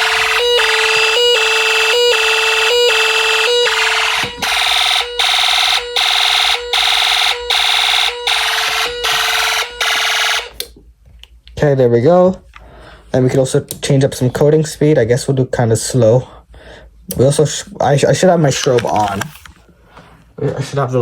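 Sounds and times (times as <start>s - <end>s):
fire alarm horns pulsing: 0.0s - 10.6s.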